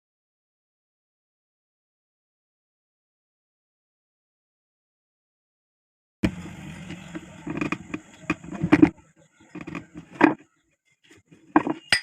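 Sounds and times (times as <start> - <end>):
low steady hum: 6.2 - 10.4
hard objects knocking and clattering: 6.2 - 10.5, 11.3 - 12.0.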